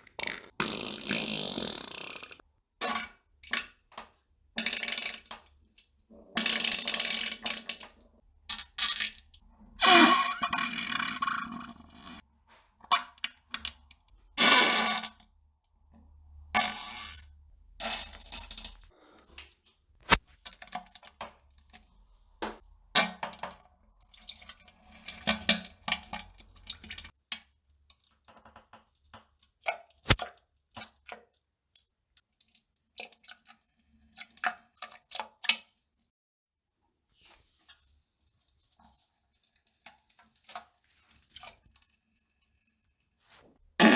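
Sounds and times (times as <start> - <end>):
splashes and plops in toilet water: 2.9 - 9.8, 19.3 - 36.1, 37.5 - 42.2.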